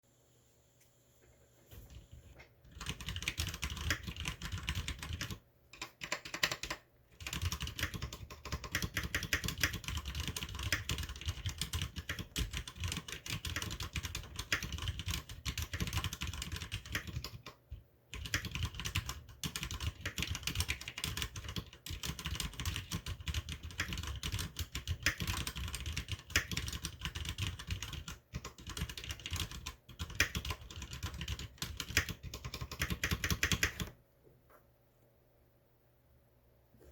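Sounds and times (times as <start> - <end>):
mechanical keyboard typing: 1.9 - 34.0.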